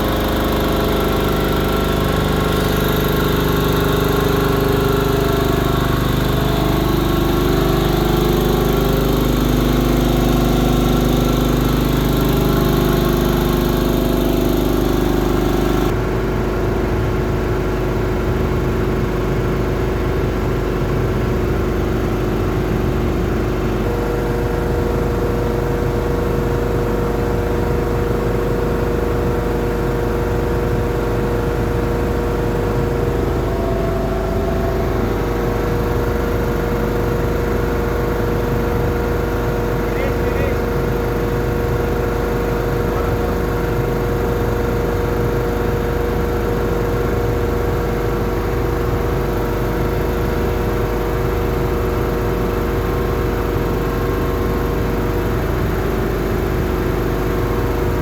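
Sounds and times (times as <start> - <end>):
air compressor running: 0.0 - 58.0.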